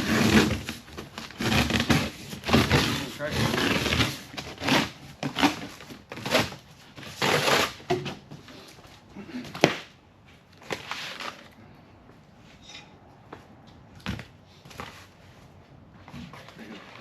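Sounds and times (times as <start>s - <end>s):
cardboard tearing and crumpling: 0.0s - 7.9s, 10.6s - 11.5s.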